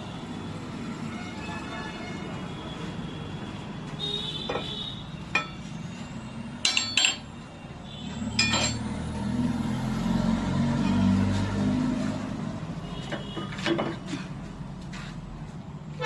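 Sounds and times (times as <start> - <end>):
workshop noise: 0.0 - 16.0
metal clinking on metal: 6.6 - 7.3, 8.4 - 8.9.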